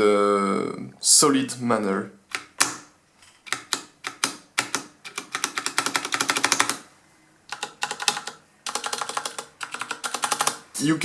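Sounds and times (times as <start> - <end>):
mechanical keyboard keys clicking: 3.4 - 6.8, 7.5 - 10.6.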